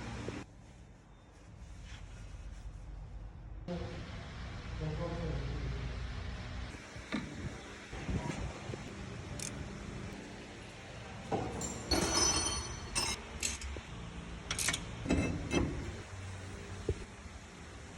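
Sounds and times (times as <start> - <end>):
metal objects clinking: 11.5 - 13.7.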